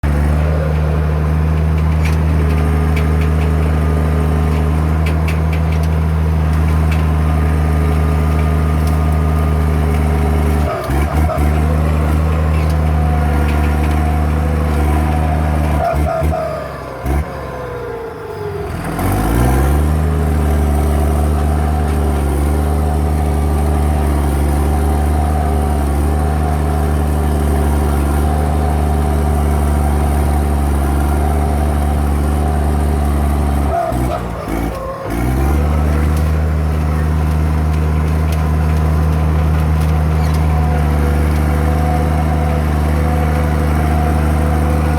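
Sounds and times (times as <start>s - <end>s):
crawler tractor diesel engine running: 0.0s - 44.9s.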